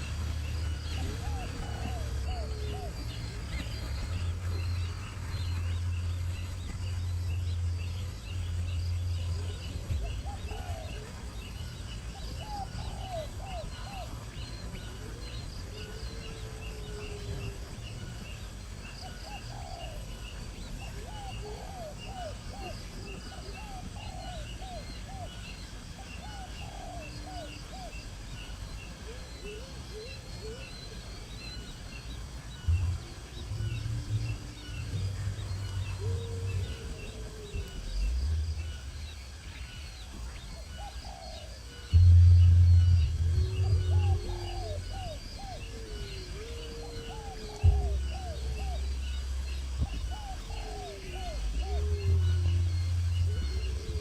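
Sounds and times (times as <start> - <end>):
birds calling with low hooked notes: 0.0 - 54.0
low rumble: 32.6 - 40.4, 41.9 - 46.4, 47.2 - 54.0
high chirping: 41.9 - 46.4.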